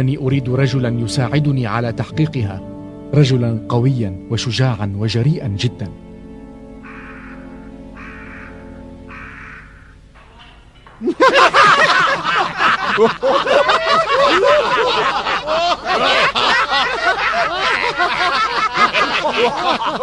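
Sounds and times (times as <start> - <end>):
music: 0.0 - 11.0
crowd laughing and chattering: 10.2 - 20.0.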